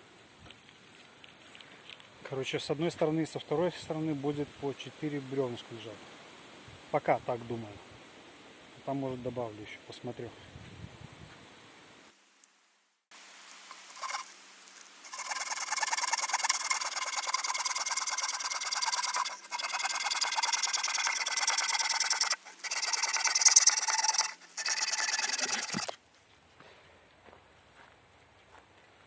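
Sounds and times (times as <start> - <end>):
hand saw cutting a log: 13.6 - 26.0.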